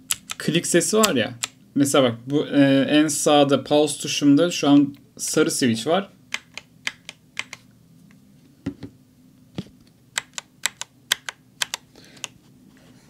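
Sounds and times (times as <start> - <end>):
mechanical keyboard keys clicking: 10.2 - 11.8.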